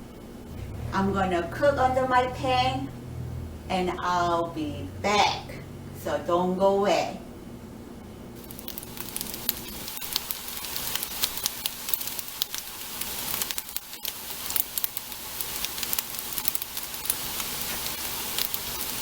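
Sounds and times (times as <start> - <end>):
food sizzling in hot oil: 8.4 - 19.0
spitting oil pops and crackles: 8.4 - 19.0.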